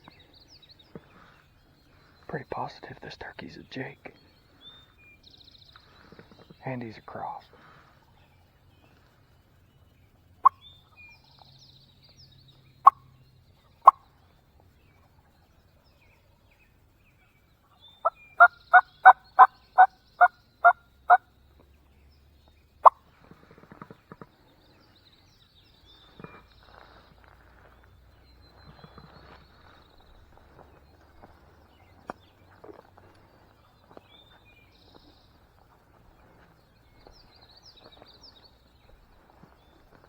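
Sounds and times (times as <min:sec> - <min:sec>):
turkey clucks: 0:18.0 - 0:21.2.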